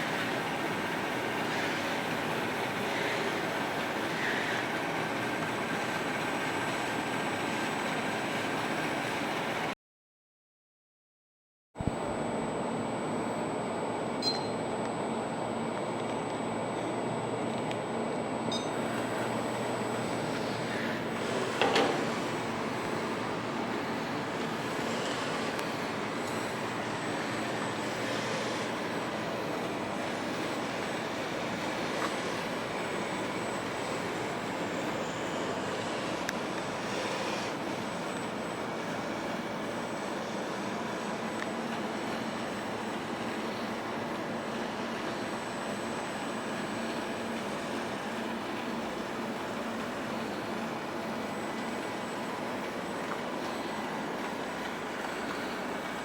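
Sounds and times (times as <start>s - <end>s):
robot vacuum cleaner whirring: 18.8s - 56.0s.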